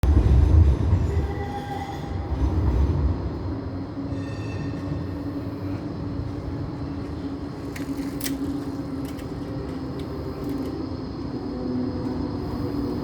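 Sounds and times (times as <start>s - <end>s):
steady low hum: 0.0s - 13.0s
tram rumbling on rails: 0.0s - 13.0s
high wheel squeals: 4.0s - 5.2s.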